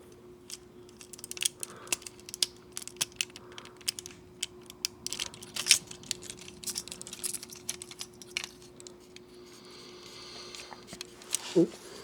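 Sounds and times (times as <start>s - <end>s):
plastic parts clicking: 0.5s - 8.9s.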